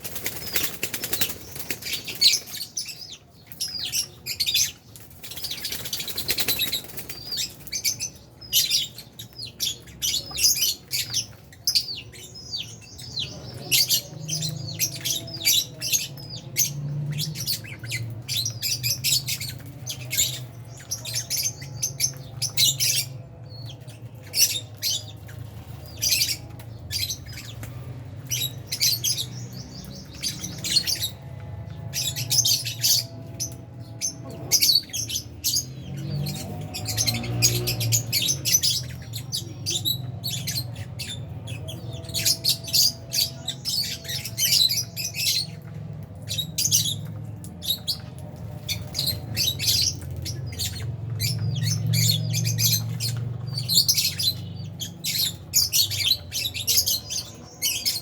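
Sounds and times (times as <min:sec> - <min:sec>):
wing flapping: 0:00.0 - 0:02.2
lovebirds chirping and squawking: 0:00.0 - 0:58.0.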